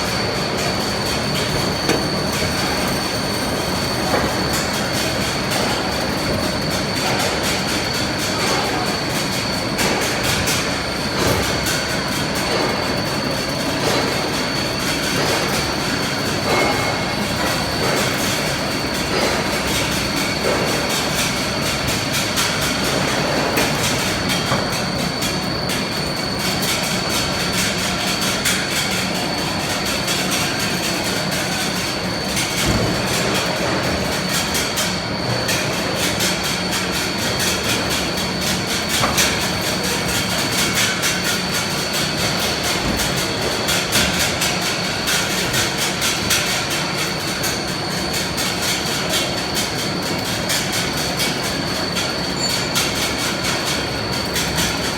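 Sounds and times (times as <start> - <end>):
low machine hum: 0.0 - 11.4
machine high whine: 0.0 - 54.9.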